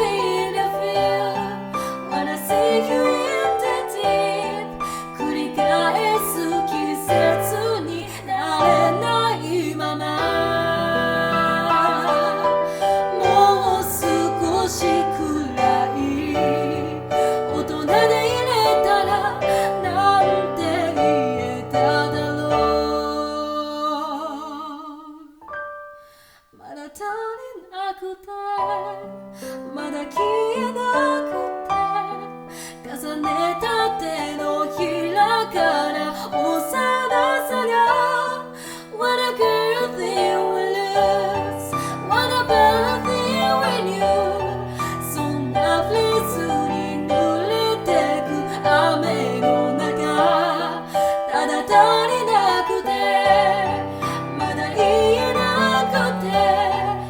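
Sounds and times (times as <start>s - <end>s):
piano accompaniment: 0.0s - 24.2s, 25.4s - 26.3s, 28.6s - 57.0s
woman singing a ballad: 0.0s - 25.4s, 26.6s - 57.0s.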